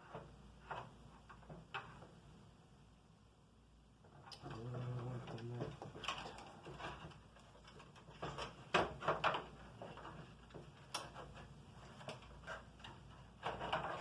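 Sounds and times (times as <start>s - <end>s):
computer parts clicking and knocking: 4.2s - 14.0s.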